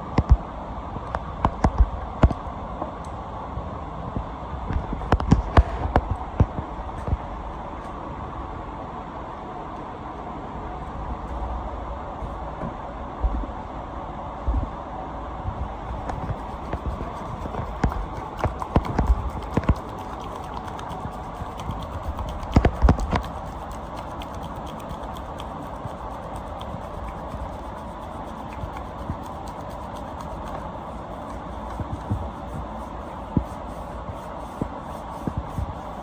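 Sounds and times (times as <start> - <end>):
steady hiss: 14.8 - 36.0.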